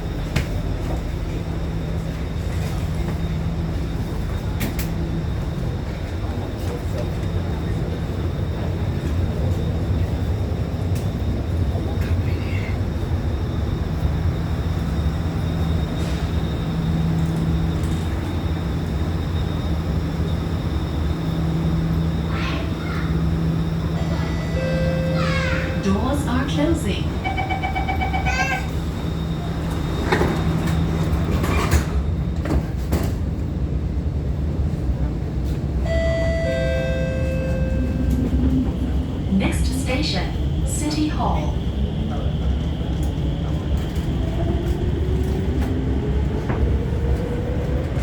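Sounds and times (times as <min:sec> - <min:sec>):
train cabin low rumble: 0:00.0 - 0:48.0
faint high hum: 0:35.8 - 0:42.2.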